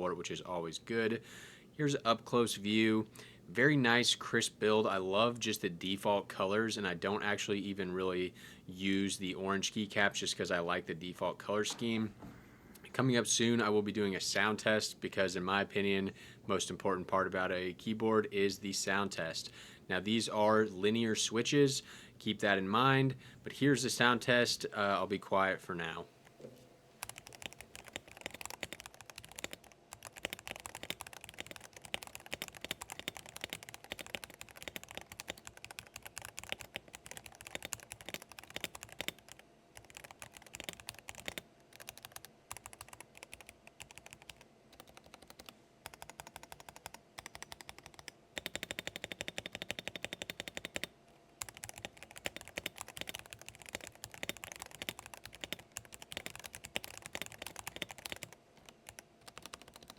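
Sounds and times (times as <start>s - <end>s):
typing on mechanical keyboard: 27.0s - 59.9s.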